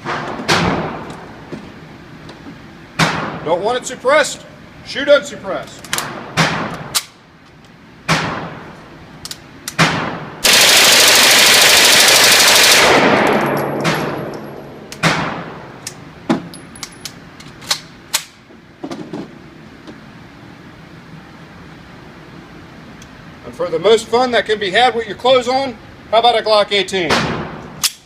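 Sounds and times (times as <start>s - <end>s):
submachine gun single shots: 9.8s - 14.4s
full-auto gunfire burst: 10.0s - 14.3s
gunshot echo: 12.8s - 15.6s.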